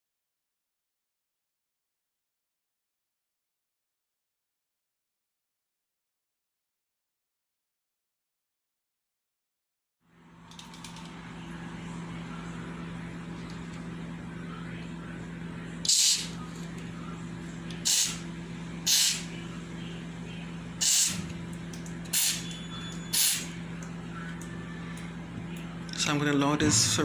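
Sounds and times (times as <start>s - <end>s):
aerosol spray hissing: 15.9s - 16.4s, 17.9s - 18.2s, 18.9s - 19.3s, 20.8s - 21.2s, 22.2s - 22.4s, 23.2s - 23.5s.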